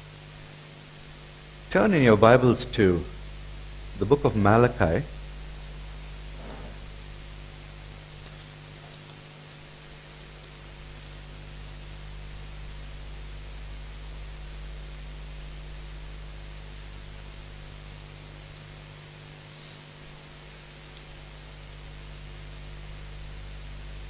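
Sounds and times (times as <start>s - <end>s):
steady hiss: 0.0s - 14.8s
low electrical hum: 0.0s - 24.0s.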